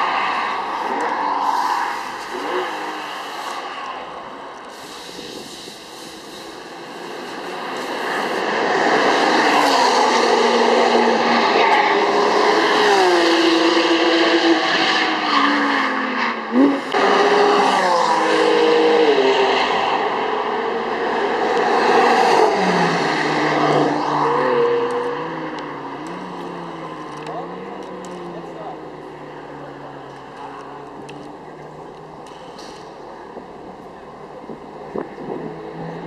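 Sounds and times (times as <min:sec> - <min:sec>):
sports car engine accelerating: 0:00.0 - 0:36.0.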